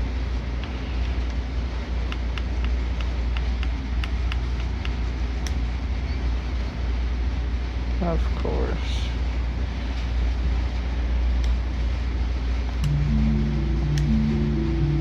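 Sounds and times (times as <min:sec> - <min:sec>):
low rumble and hiss: 0:00.0 - 0:15.0.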